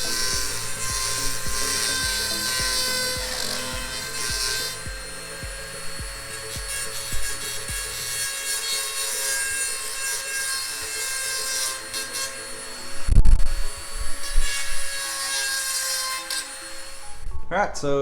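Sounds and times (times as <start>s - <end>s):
heavy low thumps: 0.0s - 8.0s
rotary tool grinding metal: 0.0s - 17.4s.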